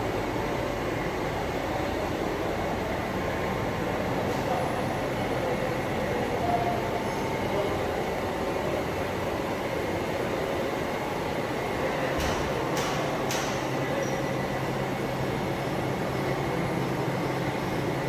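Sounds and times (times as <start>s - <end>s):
machinery rumble and hiss: 0.0s - 18.0s.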